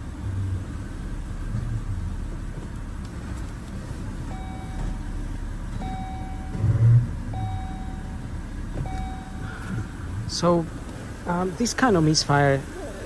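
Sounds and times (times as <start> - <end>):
car engine running: 0.0 - 13.0
short electronic beeps: 4.3 - 5.1, 5.8 - 6.7, 7.3 - 9.5.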